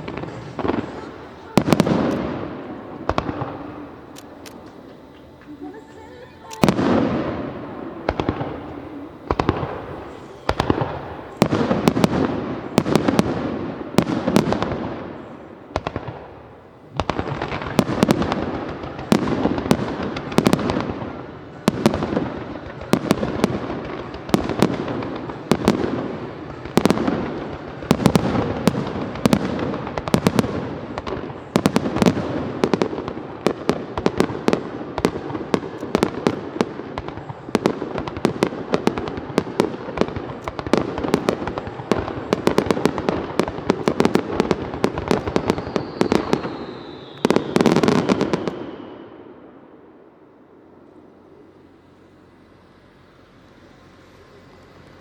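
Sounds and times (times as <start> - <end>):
fireworks shells bursting: 0.0 - 49.1.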